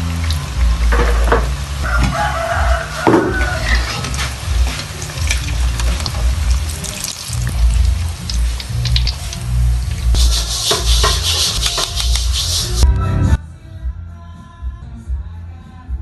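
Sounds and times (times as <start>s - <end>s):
food frying in a pan: 0.0s - 12.8s
rooster crowing: 1.8s - 4.0s.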